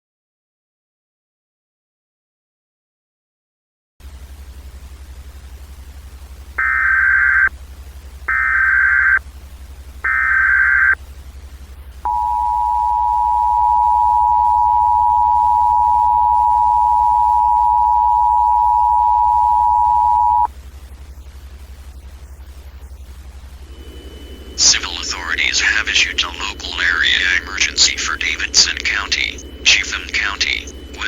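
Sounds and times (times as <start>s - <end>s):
low steady hum: 4.0s - 31.0s
digital data tone bursts: 6.6s - 7.5s, 8.3s - 9.2s, 10.0s - 11.0s, 12.1s - 20.5s, 23.7s - 31.0s
two-tone attention signal: 6.6s - 7.5s, 10.1s - 11.0s, 12.1s - 20.5s, 23.8s - 31.0s.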